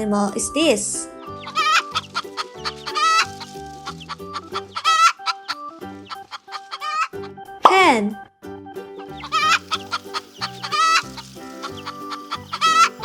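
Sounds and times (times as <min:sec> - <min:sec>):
light background music: 0:00.0 - 0:13.0
hen clucking: 0:01.2 - 0:07.4, 0:08.9 - 0:13.0.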